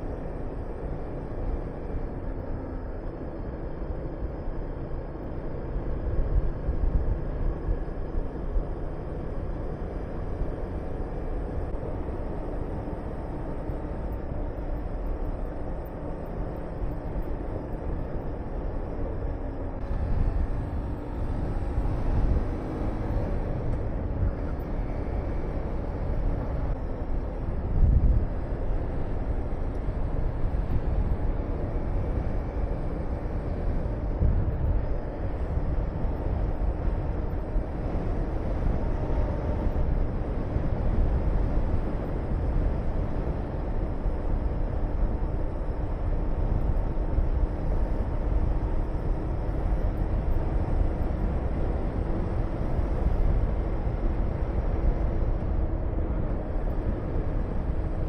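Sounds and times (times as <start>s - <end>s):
wind buffeting microphone: 19.2s - 58.0s.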